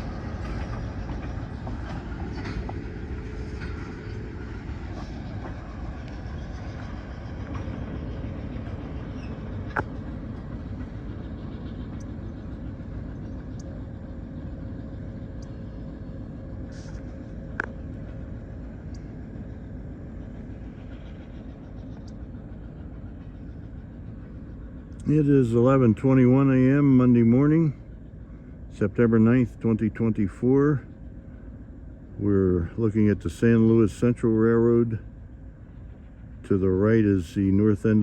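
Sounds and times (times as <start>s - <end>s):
diesel locomotive rumbling: 0.0s - 38.0s.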